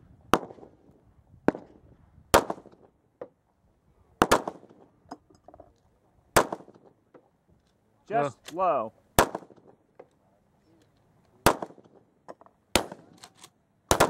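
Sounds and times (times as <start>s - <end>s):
pistol shots: 2.3s - 2.8s, 4.2s - 4.9s, 6.3s - 6.9s, 9.2s - 9.8s, 11.4s - 12.1s, 12.7s - 13.2s.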